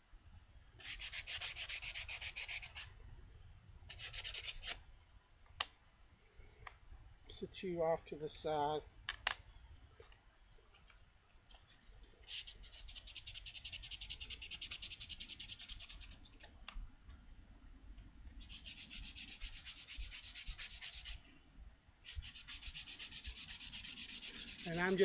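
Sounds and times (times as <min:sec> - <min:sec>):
sandpaper scrubbing metal: 0:00.8 - 0:02.9, 0:03.9 - 0:04.8, 0:12.3 - 0:16.3, 0:18.4 - 0:21.2, 0:22.0 - 0:25.0.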